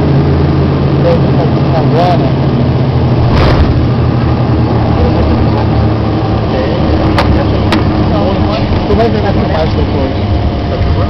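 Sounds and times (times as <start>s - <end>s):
turboprop engines droning: 0.0s - 11.0s.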